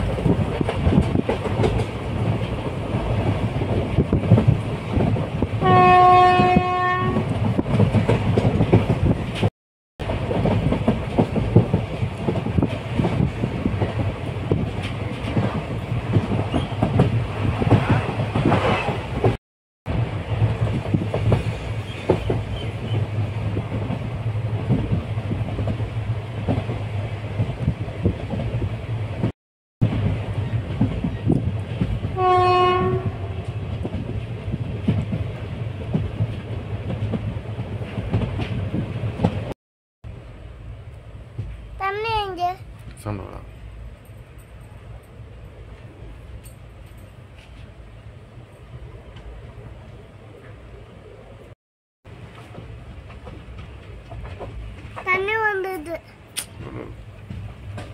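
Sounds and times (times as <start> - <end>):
train rumble and wheel clatter: 0.0 - 57.9
train horn blast: 5.6 - 7.2, 32.2 - 33.5.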